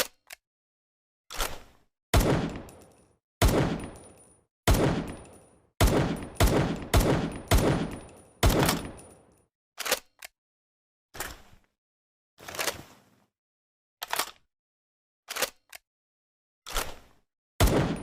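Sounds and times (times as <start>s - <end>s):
pistol shots: 2.2s - 2.7s, 3.4s - 4.0s, 4.7s - 9.2s, 17.6s - 18.0s.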